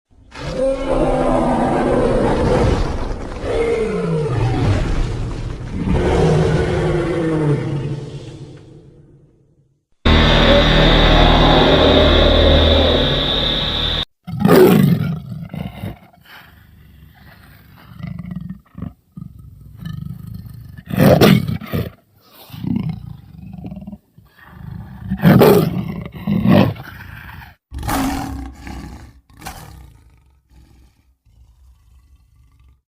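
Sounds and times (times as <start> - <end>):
cartoon dinosaur roars: 0.3 - 5.2, 5.8 - 8.7, 10.1 - 19.0, 24.4 - 32.8
low growls: 10.1 - 20.9, 26.1 - 32.9.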